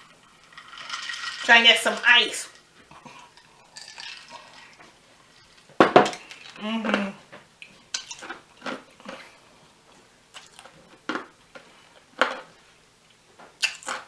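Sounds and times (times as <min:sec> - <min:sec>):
ice crunched between teeth: 0:00.4 - 0:01.6.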